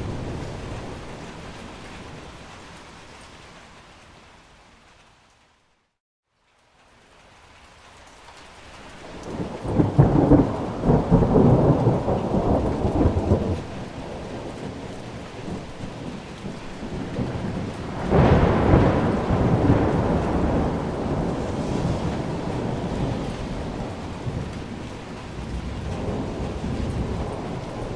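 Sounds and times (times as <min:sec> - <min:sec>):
rolling thunder: 0:00.0 - 0:02.2, 0:09.1 - 0:27.9
rain: 0:00.0 - 0:27.9.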